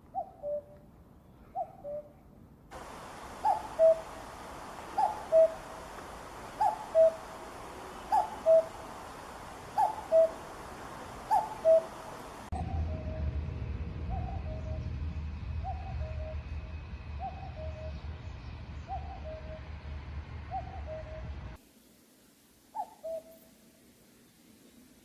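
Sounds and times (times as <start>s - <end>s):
faint background hiss: 0.0s - 12.5s, 20.8s - 25.0s
cuckoo calling: 2.8s - 13.1s, 22.7s - 23.5s.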